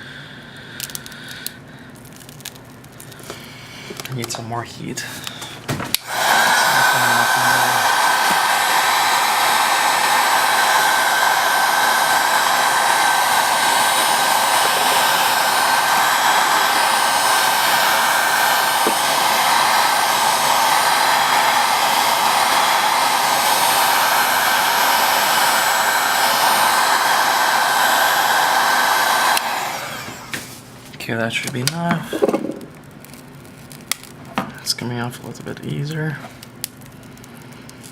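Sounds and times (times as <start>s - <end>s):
hot-air blower rushing and whining: 5.0s - 30.9s, 31.7s - 32.6s.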